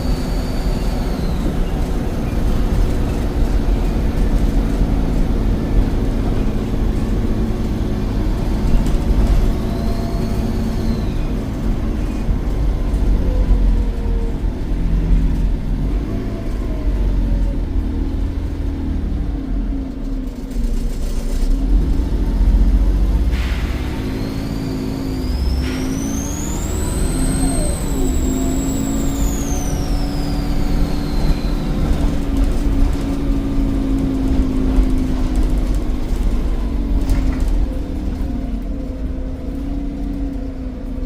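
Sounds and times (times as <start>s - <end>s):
turbocharger whistle: 0.0s - 1.9s, 9.4s - 11.3s, 23.5s - 32.2s
bus diesel engine rumble: 0.0s - 41.0s.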